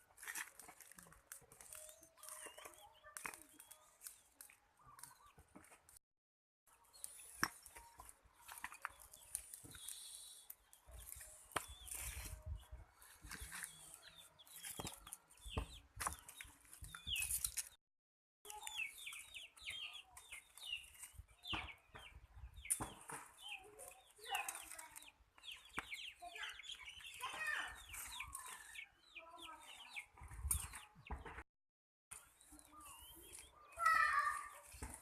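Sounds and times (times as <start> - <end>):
chickens clucking: 18.5 - 31.4.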